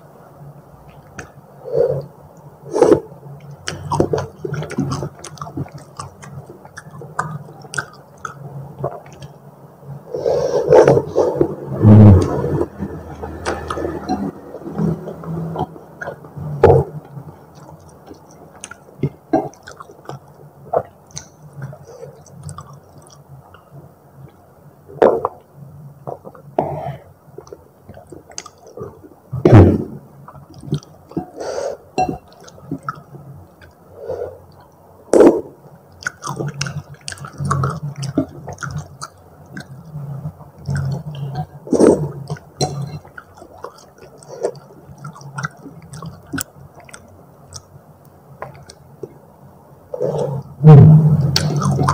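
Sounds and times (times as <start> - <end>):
chewing with wet mouth smacks: 3.4 - 9.4, 12.2 - 23.7, 27.4 - 29.0, 30.3 - 31.4, 32.0 - 33.8, 35.9 - 49.2, 51.3 - 51.9.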